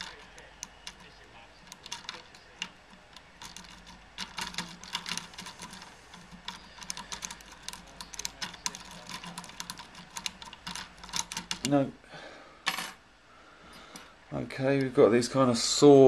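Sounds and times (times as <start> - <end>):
lock pick rake clicking in lock: 1.7 - 11.7.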